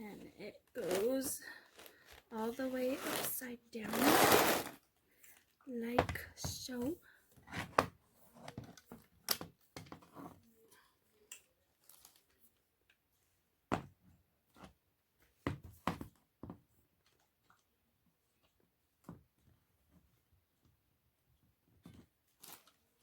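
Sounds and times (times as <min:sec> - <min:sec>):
rustling: 0:00.8 - 0:04.8.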